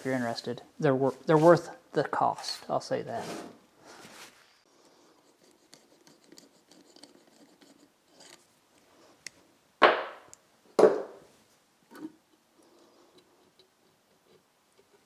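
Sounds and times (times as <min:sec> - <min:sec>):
parts scraping on workbench: 0:03.1 - 0:04.4.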